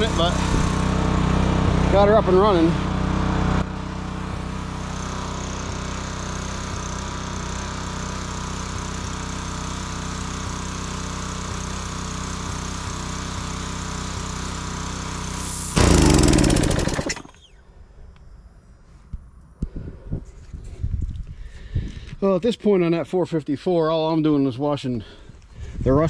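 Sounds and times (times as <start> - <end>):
small gas engine running: 0.0 - 17.5.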